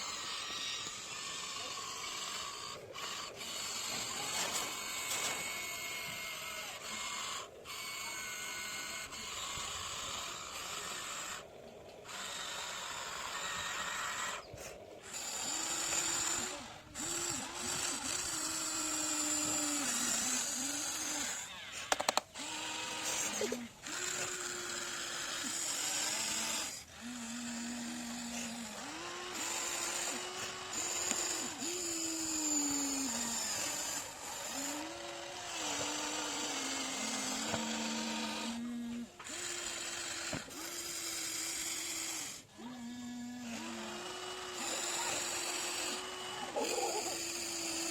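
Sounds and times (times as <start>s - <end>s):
toy excavator motors whining: 0.0s - 47.9s
rattle of clicks: 19.8s - 22.4s.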